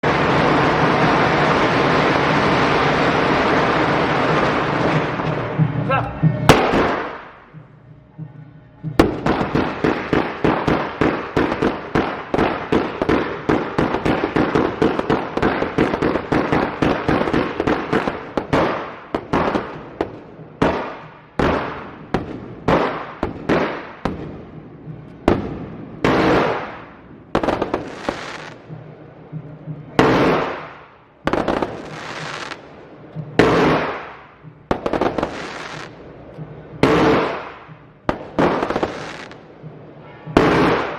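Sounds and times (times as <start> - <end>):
fireworks bangs: 0.0 - 40.9.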